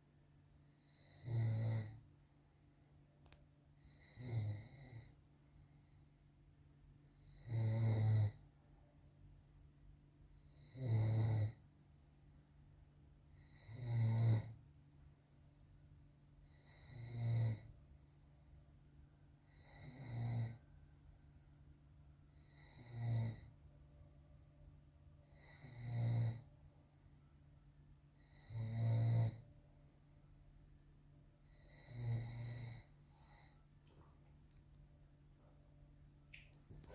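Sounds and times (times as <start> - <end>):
man snoring: 0.7 - 2.0, 3.8 - 5.2, 7.2 - 8.4, 10.4 - 11.6, 13.4 - 14.6, 16.5 - 17.7, 19.5 - 20.6, 22.3 - 23.5, 25.3 - 26.4, 28.2 - 29.4, 31.5 - 33.5.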